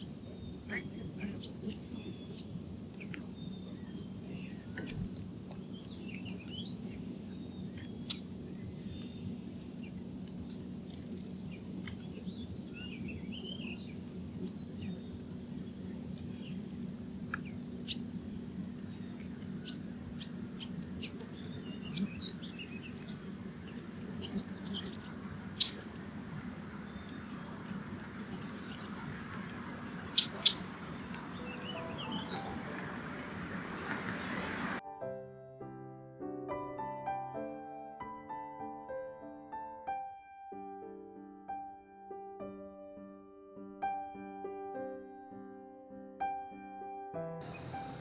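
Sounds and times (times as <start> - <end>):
soft bird chirps: 0.0 - 10.7, 11.3 - 34.8, 47.4 - 48.0
steady low hum: 0.0 - 32.0
bird sharp high call: 3.9 - 4.8, 8.0 - 9.4, 12.0 - 13.8, 18.0 - 18.9, 21.1 - 22.9, 24.7 - 27.5, 28.2 - 32.7.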